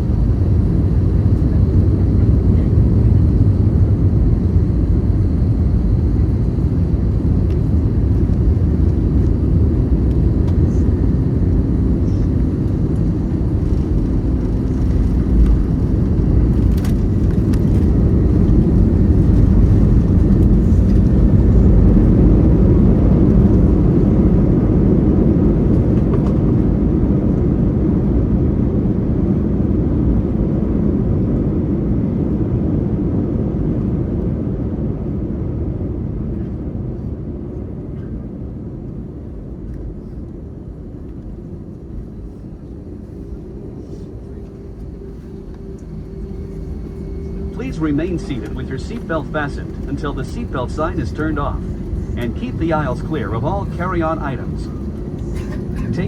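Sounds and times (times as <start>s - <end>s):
airliner cabin engine rumble: 0.0s - 56.0s.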